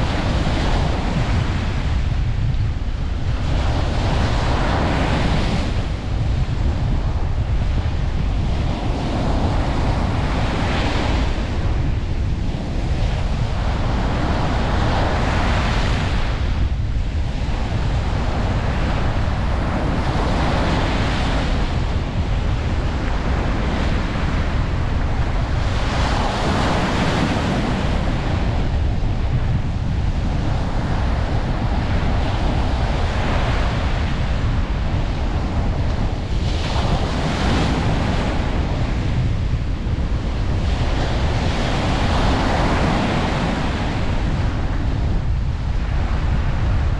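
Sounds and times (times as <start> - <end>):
wind rumble on microphone: 0.0 - 46.9
ocean surf breaking: 17.3 - 46.9.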